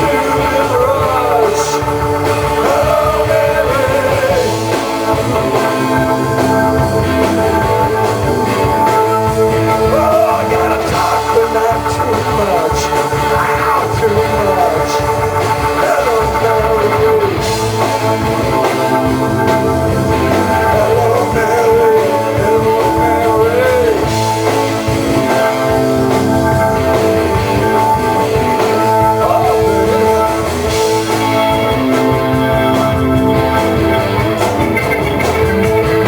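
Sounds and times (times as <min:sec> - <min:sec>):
person singing: 0:00.0 - 0:17.6, 0:20.2 - 0:24.5, 0:27.8 - 0:33.2
rock music: 0:00.0 - 0:36.0.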